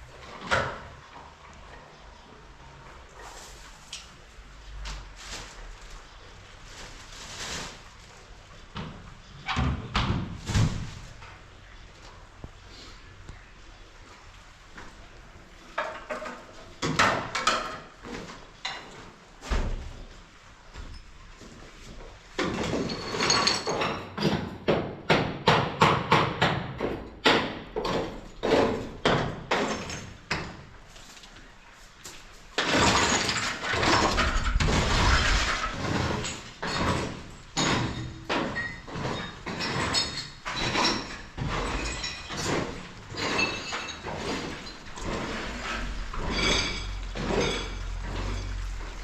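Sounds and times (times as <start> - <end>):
dense rattling clatter: 32.6 - 49.0.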